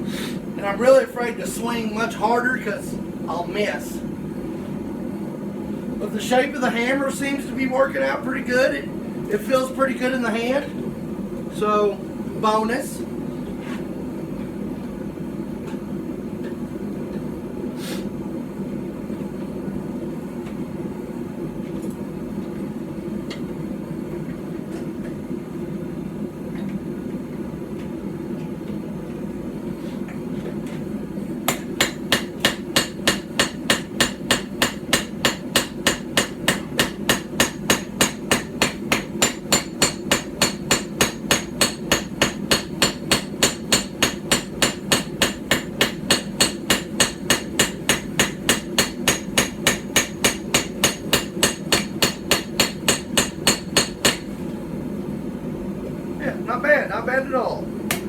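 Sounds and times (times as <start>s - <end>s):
hammer striking hot steel: 31.5s - 54.4s.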